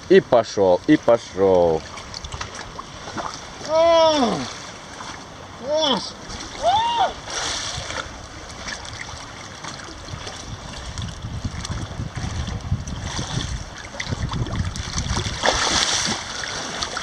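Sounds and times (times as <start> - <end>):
sea water splashing: 0.8 - 17.0.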